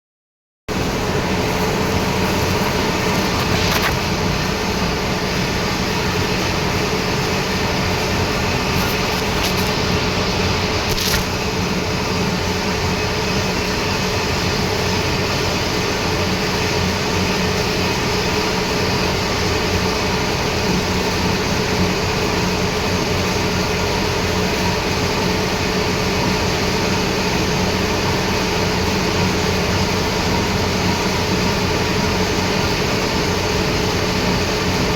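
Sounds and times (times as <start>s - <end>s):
metalworking lathe humming: 0.8s - 11.8s.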